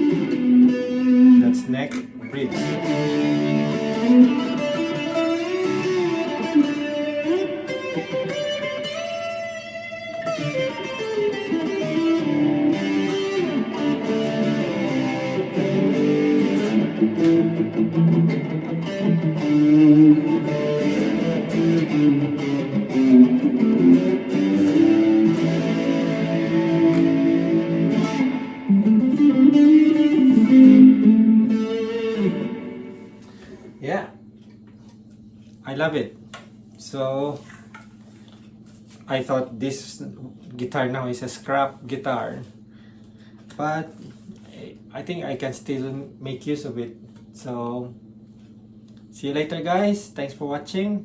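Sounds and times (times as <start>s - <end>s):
distorted electric guitar: 0.0s - 33.8s.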